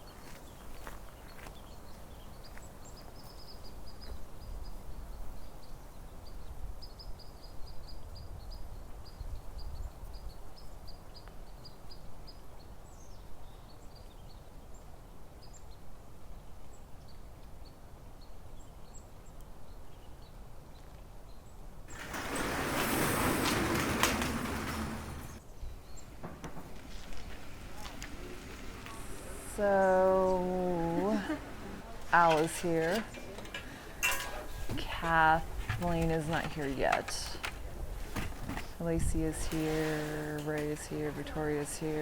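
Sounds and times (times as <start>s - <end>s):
wind rumble: 21.9s - 42.0s.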